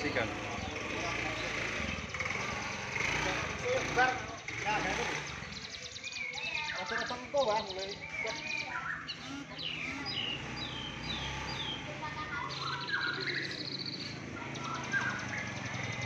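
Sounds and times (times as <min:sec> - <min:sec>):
high buzzy bird trill: 0:00.0 - 0:16.0
songbirds chirping: 0:00.0 - 0:16.0.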